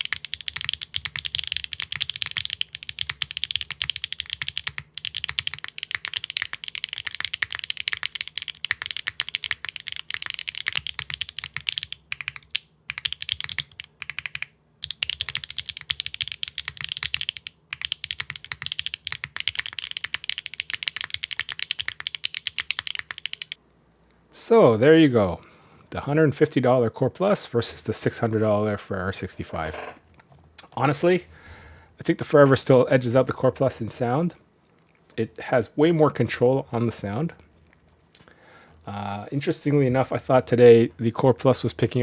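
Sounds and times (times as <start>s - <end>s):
mechanical keyboard typing: 0.0s - 23.6s.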